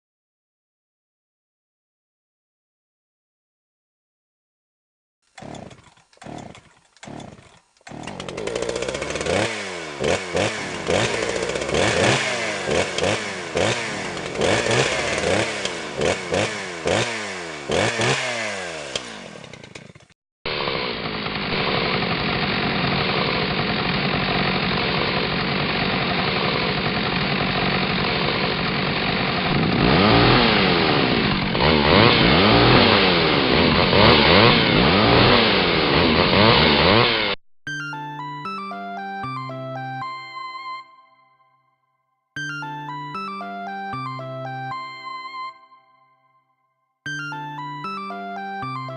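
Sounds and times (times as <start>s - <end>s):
chainsaw engine revving: 5.2s - 37.4s
chainsaw running steadily: 5.2s - 37.4s
chainsaw starter cord pulls: 5.2s - 37.4s.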